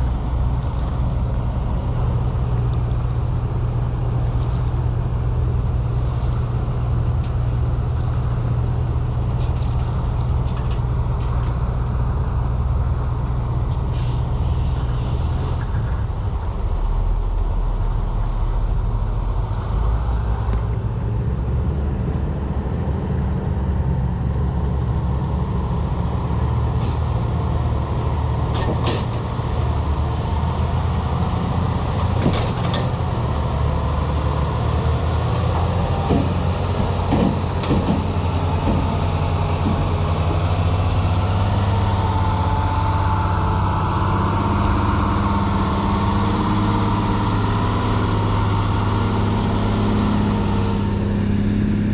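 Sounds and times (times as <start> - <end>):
heavy diesel engine running: 0.0 - 51.9
metallic knocks and clanks: 9.2 - 13.4, 28.5 - 29.3, 35.6 - 40.4.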